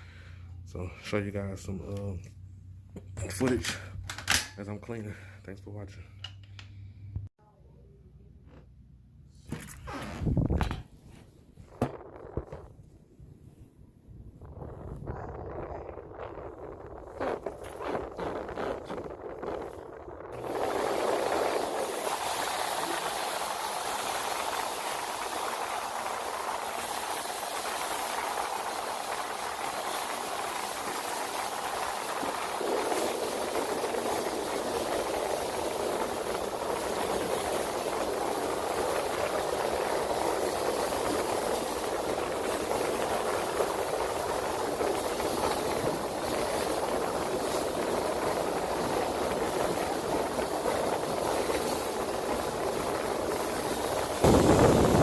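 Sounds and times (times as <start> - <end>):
vacuum cleaner on carpet: 20.3 - 55.0.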